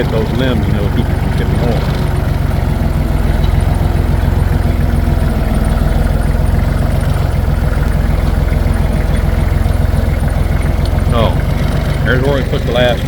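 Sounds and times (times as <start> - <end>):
tractor engine droning: 0.0 - 13.0.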